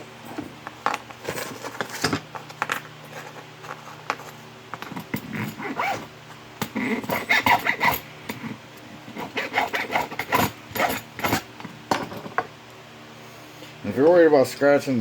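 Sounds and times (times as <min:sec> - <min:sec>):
metal tools clinking and rattling: 0:10.0 - 0:12.4.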